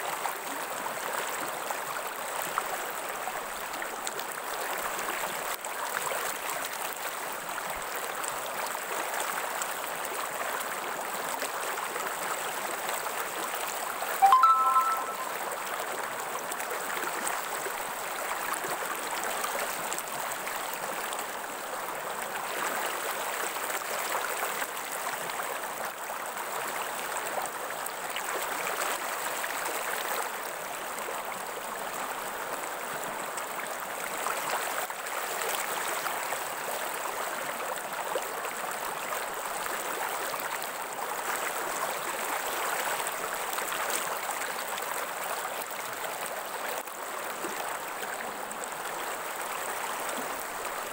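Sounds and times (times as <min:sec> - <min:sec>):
water rushing in a stream: 0:00.0 - 0:50.9.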